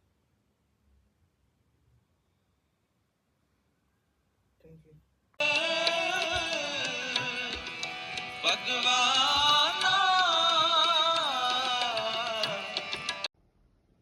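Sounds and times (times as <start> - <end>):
wavering ornamented melody: 5.4 - 13.3.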